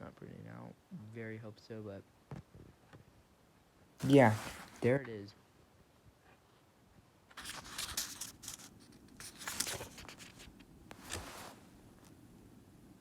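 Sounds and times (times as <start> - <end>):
paper rustling: 4.0 - 4.9, 7.3 - 11.6.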